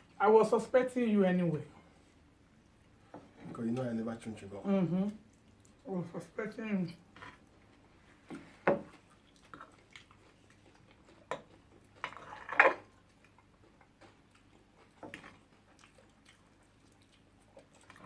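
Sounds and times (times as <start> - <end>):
chewing and biting: 8.9 - 18.0.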